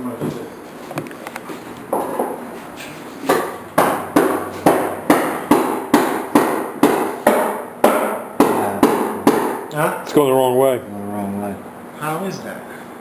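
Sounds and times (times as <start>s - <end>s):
hammer knocking wood: 3.3s - 9.7s.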